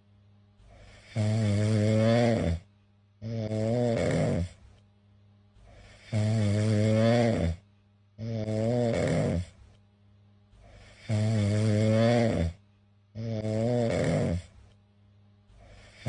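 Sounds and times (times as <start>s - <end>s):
cat snoring: 0.7s - 4.7s, 5.6s - 7.6s, 8.2s - 9.7s, 10.6s - 12.6s, 13.2s - 14.6s, 15.6s - 16.0s.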